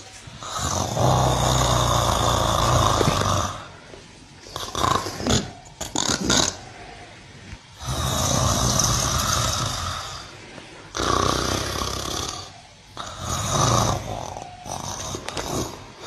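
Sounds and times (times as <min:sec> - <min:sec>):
cow snoring: 0:00.4 - 0:06.8, 0:07.8 - 0:16.0.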